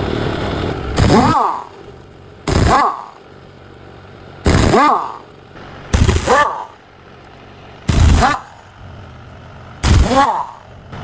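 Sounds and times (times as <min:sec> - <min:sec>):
pneumatic impact wrench hammering: 0:01.0 - 0:01.8, 0:02.5 - 0:03.2, 0:04.4 - 0:05.3, 0:05.9 - 0:06.8, 0:07.9 - 0:08.6, 0:09.8 - 0:10.7.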